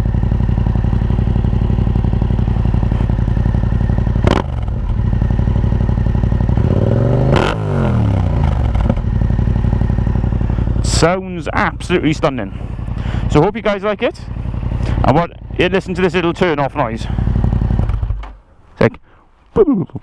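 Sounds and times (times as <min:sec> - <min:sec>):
motorcycle engine idling: 0:00.0 - 0:18.6
engine revving: 0:04.0 - 0:18.3.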